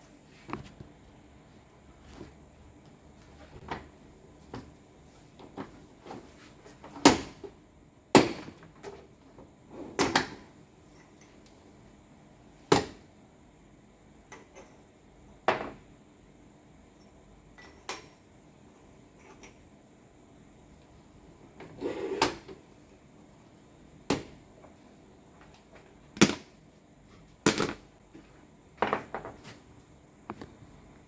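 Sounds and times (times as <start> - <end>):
tools and metal parts knocking: 27.5 - 27.9.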